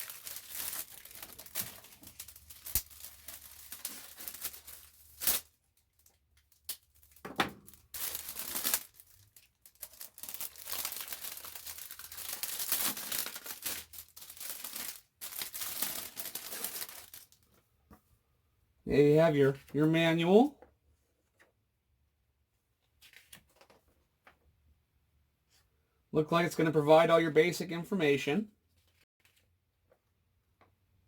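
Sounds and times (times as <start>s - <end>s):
packaging bag crinkling: 0.0s - 6.1s, 6.8s - 17.4s.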